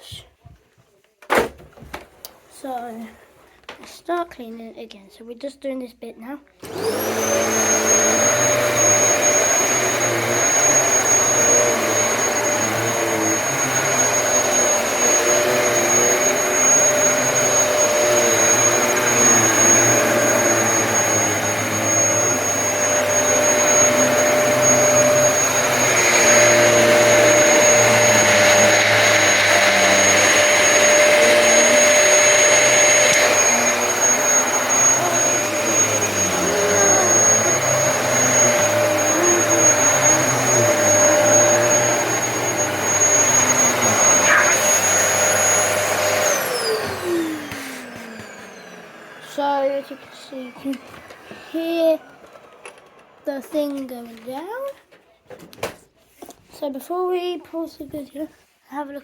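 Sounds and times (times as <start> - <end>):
upright vacuum cleaner running: 6.6 - 55.8.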